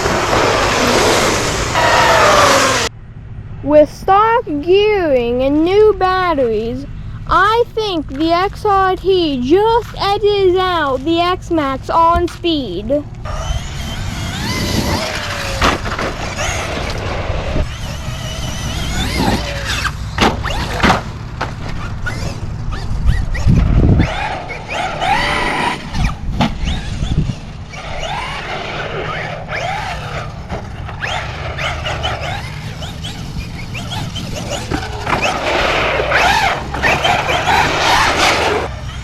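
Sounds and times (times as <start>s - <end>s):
electric motor whine: 0.0s - 2.9s, 13.2s - 39.0s
tyre noise: 0.0s - 2.9s, 9.6s - 39.0s.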